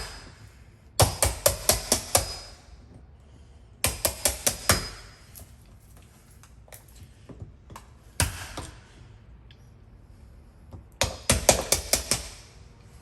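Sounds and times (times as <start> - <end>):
hammer striking a chisel: 0.0 - 0.4, 1.0 - 2.8, 3.8 - 5.3, 11.0 - 12.5.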